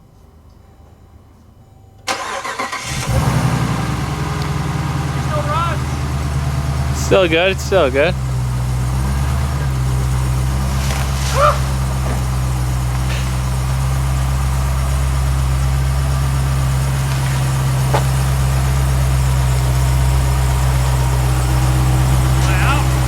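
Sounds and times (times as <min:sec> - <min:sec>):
car engine idling: 0:02.0 - 0:23.0.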